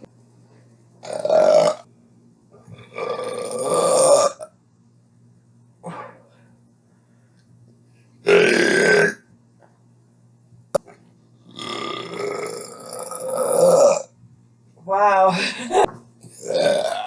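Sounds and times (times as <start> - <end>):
person burping loudly: 1.0 - 1.9, 2.8 - 4.5, 8.2 - 9.2, 11.5 - 14.1, 16.4 - 17.0.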